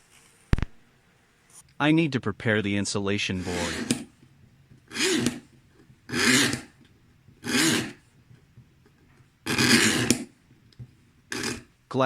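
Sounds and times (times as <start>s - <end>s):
hand tool rasping through board: 3.4s - 4.1s, 4.9s - 5.4s, 6.1s - 6.7s, 7.4s - 8.0s, 9.5s - 10.3s, 11.3s - 11.7s.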